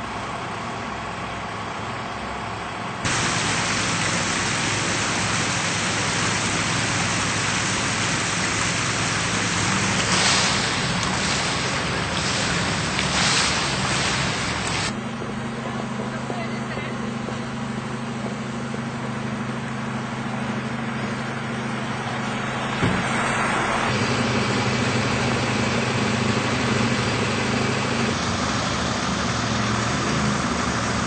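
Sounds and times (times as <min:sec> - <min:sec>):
engine hum: 0:00.0 - 0:31.0
rushing water: 0:03.0 - 0:15.0, 0:20.7 - 0:31.0.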